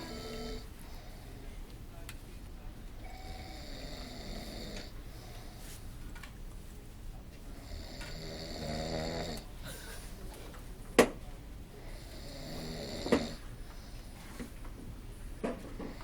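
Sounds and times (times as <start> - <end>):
person snoring: 0.0 - 0.7, 3.0 - 4.9, 7.6 - 9.4, 12.0 - 13.4.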